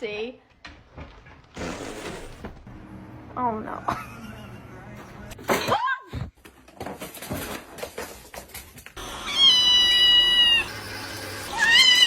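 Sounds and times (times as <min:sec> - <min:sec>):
cat meowing: 0:09.2 - 0:10.7, 0:11.5 - 0:12.0.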